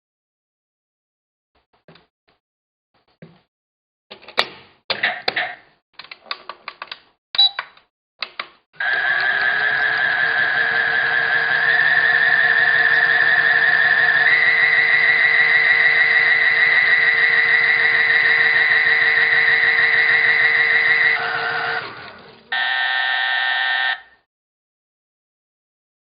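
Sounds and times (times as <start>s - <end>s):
washing machine motor whining: 8.8s - 22.9s
harsh buzzer: 12.3s - 24.3s.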